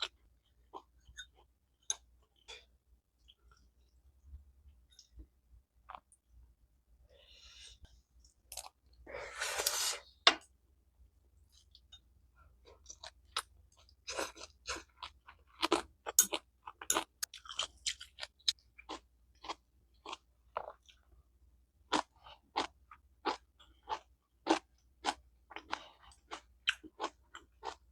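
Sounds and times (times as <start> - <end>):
chewing crisp food: 12.6 - 21.2, 21.8 - 27.9.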